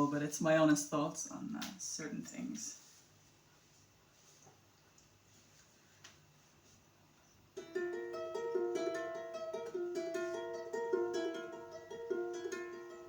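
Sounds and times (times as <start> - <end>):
plucked string instrument picking: 7.6 - 13.0.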